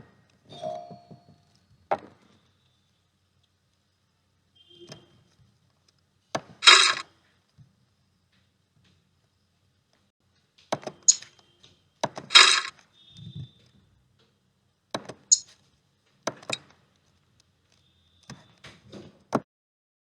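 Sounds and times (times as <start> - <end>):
plastic pieces clicking and rattling: 6.6 - 7.0, 12.1 - 12.7.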